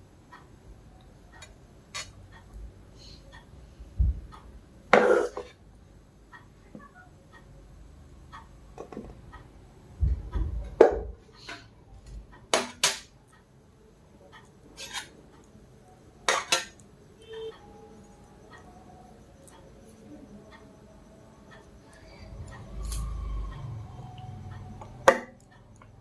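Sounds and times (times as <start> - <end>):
dishes and cutlery clinking: 14.8 - 15.2, 16.2 - 16.8.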